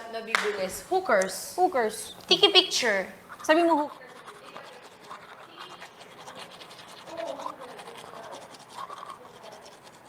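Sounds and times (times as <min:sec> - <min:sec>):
fine scratching noise: 0:01.6 - 0:10.0
faint low voices: 0:03.4 - 0:10.0.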